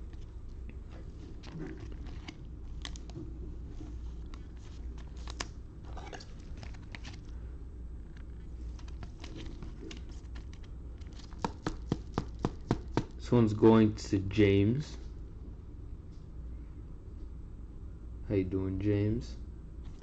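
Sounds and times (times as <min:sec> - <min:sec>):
cards and plastic wrappers crinkling: 0:00.9 - 0:07.4, 0:08.1 - 0:12.7.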